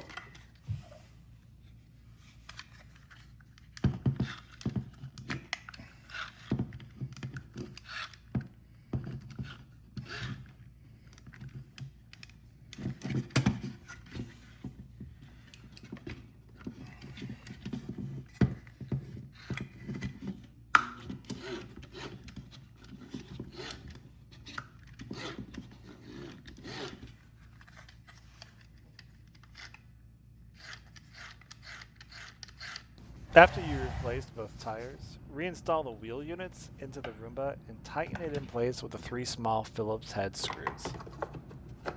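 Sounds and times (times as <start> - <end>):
plastic and rubber clicks and scrapes: 2.2 - 34.8.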